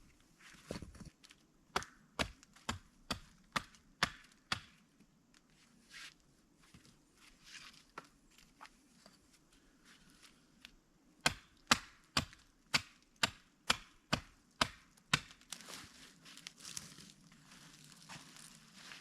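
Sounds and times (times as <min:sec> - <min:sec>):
axe chopping wood: 0:01.7 - 0:04.8, 0:11.2 - 0:15.4.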